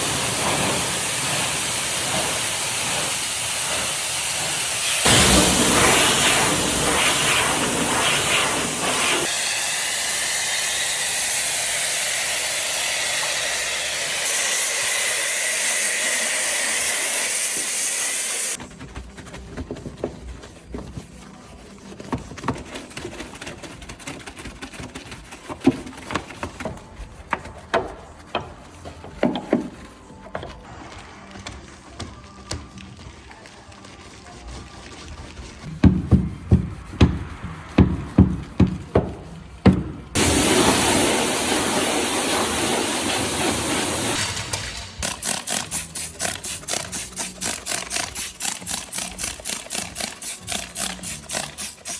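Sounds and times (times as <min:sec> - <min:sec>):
high-pressure spray hissing: 0:00.0 - 0:18.6, 0:40.2 - 0:51.9.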